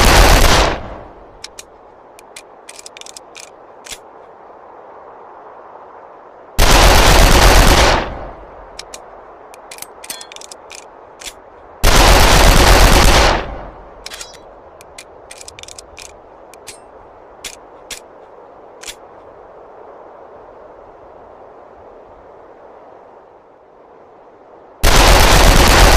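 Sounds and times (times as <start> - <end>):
light clicks: 1.4 - 4.3, 8.8 - 11.6, 14.0 - 19.3.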